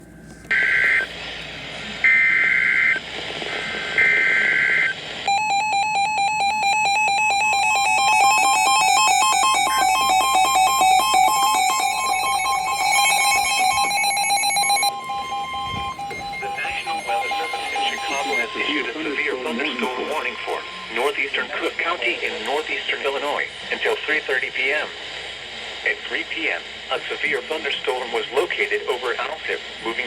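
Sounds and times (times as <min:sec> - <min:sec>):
buzzing data tones: 0:04.0 - 0:21.4
two-tone attention signal: 0:05.3 - 0:21.2.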